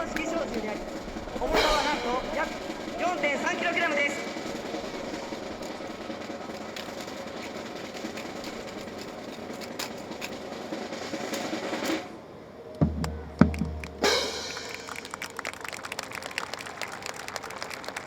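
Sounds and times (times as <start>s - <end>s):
drum roll: 0.0s - 12.2s, 12.8s - 16.0s
people clapping: 13.0s - 18.0s.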